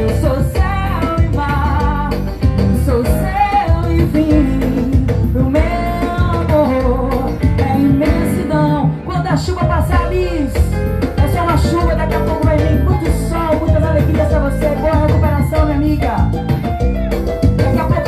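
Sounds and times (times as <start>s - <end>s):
latin song with vocals and band: 0.0s - 18.0s.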